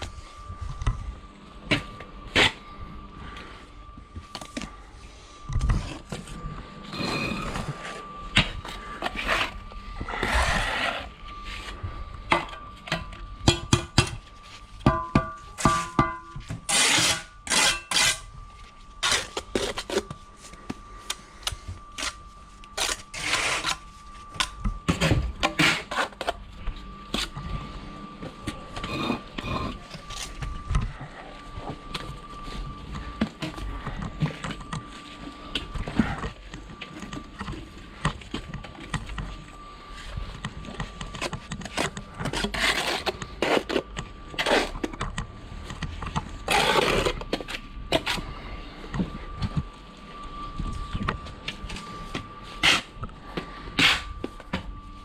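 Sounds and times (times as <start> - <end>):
mortar scraping: 8.8 - 11.8, 15.2 - 18.3, 41.7 - 44.8.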